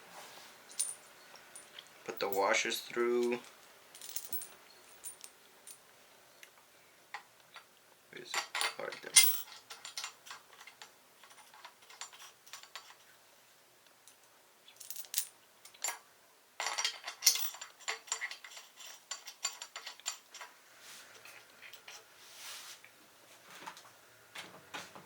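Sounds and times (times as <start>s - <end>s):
small metal parts clinking: 0.7s - 5.8s, 7.1s - 13.1s, 14.0s - 16.0s, 16.6s - 20.5s.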